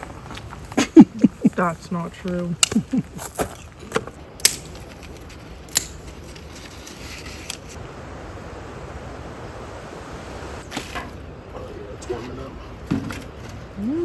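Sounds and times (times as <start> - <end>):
small fire crackling: 0.0 - 12.5
low rushing noise: 7.7 - 12.9.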